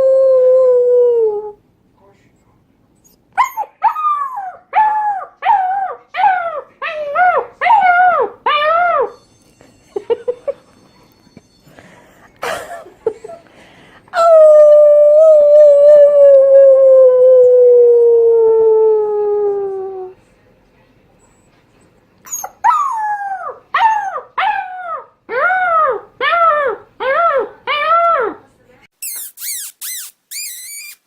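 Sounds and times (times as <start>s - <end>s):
puppy yipping: 3.0s - 9.1s, 22.2s - 23.0s, 29.0s - 31.0s
puppy howling: 3.4s - 9.1s, 22.3s - 28.4s.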